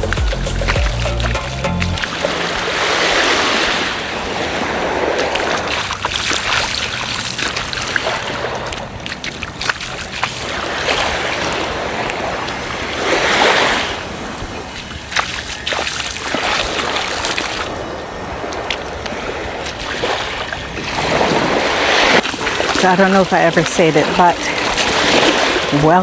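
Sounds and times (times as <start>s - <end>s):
music: 0.0s - 2.1s
small waves breaking on beach: 2.0s - 26.0s.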